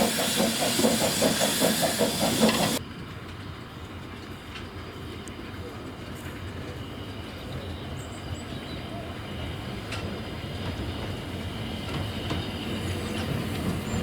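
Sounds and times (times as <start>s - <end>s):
wheels clattering on rail: 0.0s - 8.8s, 9.5s - 14.0s
steam train rumbling: 0.0s - 14.0s.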